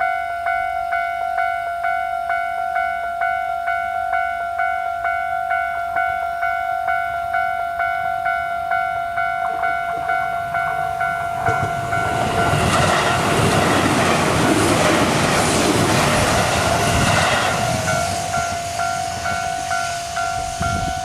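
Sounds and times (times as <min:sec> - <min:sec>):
electric train passing: 0:00.0 - 0:21.0
level crossing warning bell: 0:00.0 - 0:21.0.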